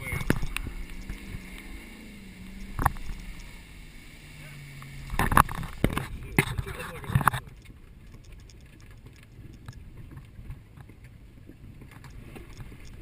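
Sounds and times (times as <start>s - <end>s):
vehicle engine rumble: 0.0s - 13.0s
light ticks: 0.1s - 1.7s, 2.4s - 3.6s, 4.8s - 11.1s, 11.8s - 13.0s.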